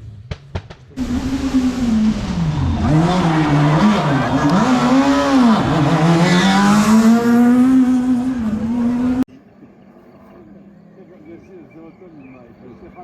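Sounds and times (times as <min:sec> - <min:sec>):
rally car engine high revs: 0:01.0 - 0:09.2.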